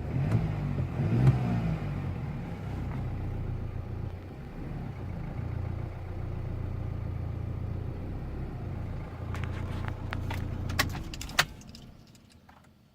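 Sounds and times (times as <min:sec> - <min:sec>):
diesel engine rough idling: 0:02.1 - 0:12.0.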